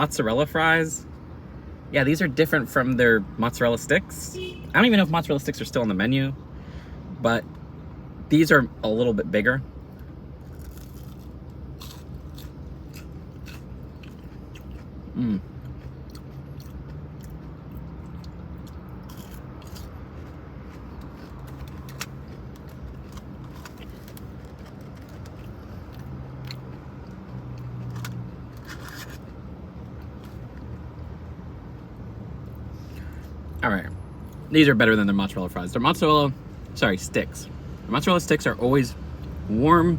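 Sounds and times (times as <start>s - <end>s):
steady low hum: 0.0s - 39.9s
chewing crunchy food: 9.9s - 29.3s.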